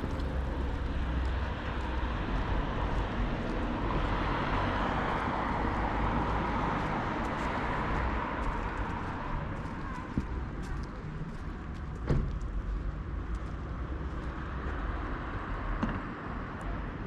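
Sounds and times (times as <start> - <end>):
car passing: 0.0 - 9.5
low traffic rumble: 0.0 - 17.0.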